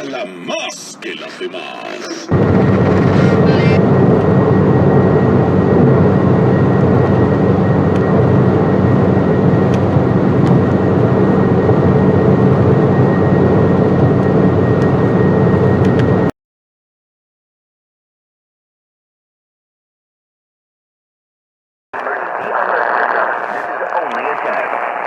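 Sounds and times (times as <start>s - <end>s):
loud rushing radio noise: 0.0s - 3.8s, 22.0s - 25.0s.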